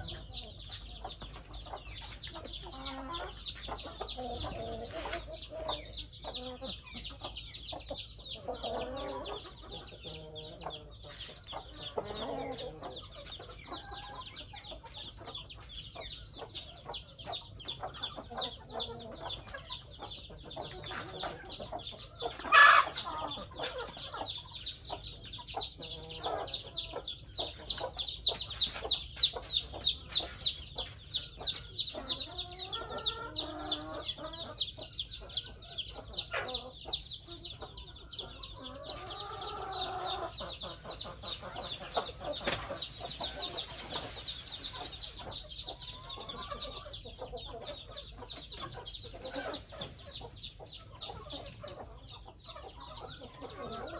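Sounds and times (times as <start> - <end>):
chickens clucking: 0.0 - 53.9
high-pitched peeping: 0.0 - 53.9.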